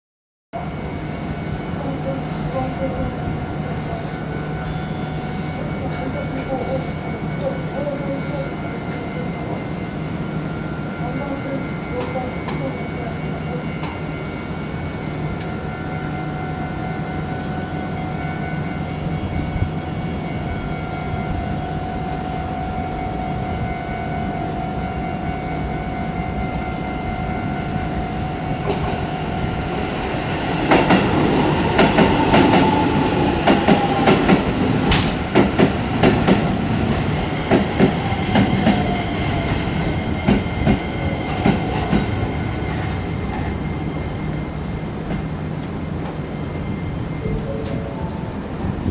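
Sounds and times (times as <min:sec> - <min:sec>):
level crossing alarm ringing: 0:01.0 - 0:48.4
train whine falling in pitch: 0:08.9 - 0:48.9
train wheels clattering: 0:30.4 - 0:47.9.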